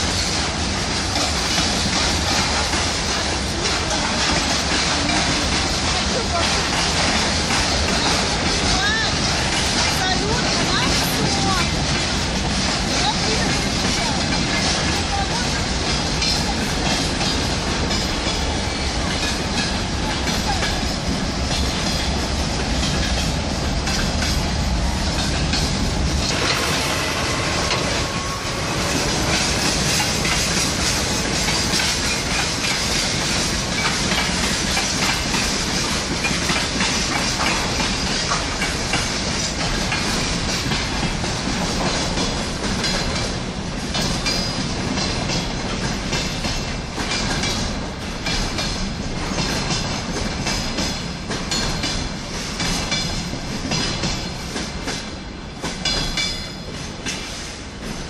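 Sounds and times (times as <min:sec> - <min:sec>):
train rumbling on rails: 0:00.0 - 0:58.0.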